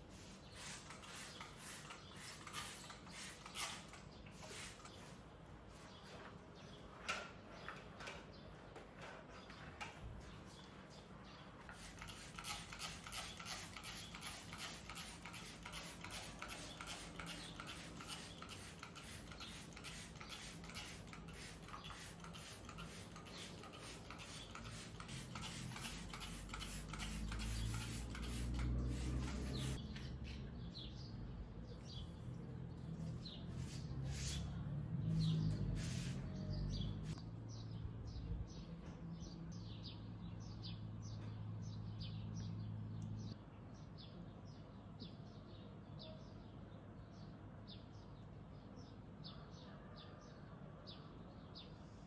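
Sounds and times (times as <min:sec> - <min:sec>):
birds chirping faintly: 0:00.1 - 0:50.4
rapid scratchy rubbing strokes: 0:11.8 - 0:29.8, 0:33.5 - 0:34.6, 0:35.6 - 0:36.3.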